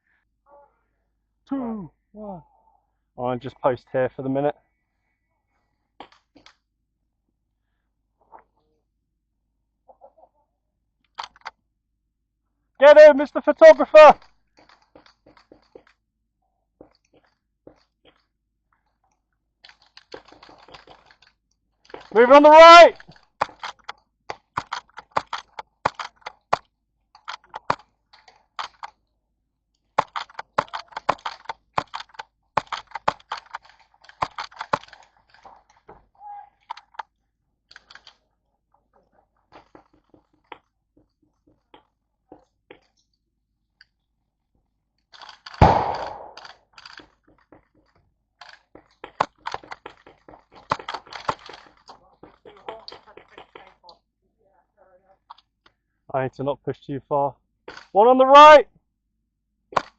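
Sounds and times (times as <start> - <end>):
airsoft guns firing: 45.5 - 46.6.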